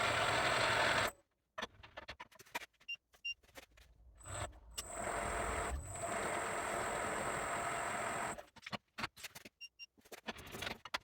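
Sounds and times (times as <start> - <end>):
milling machine high whine: 0.0 - 1.1, 4.4 - 8.4.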